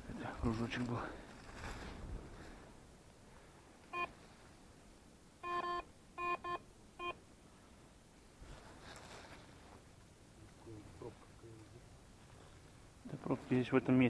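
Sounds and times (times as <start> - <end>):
metal detector beeps: 5.4 - 7.2.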